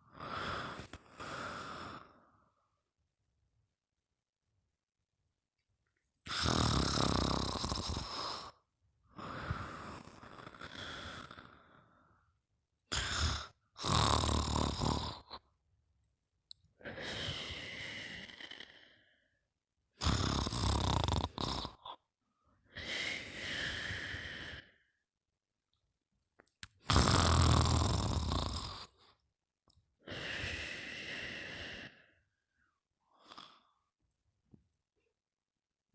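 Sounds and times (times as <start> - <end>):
person snoring: 0.0 - 2.4, 6.3 - 8.6, 9.2 - 12.1, 12.9 - 15.5, 16.8 - 19.2, 20.0 - 22.1, 22.7 - 24.8, 26.8 - 29.2, 30.0 - 32.2, 33.1 - 33.9.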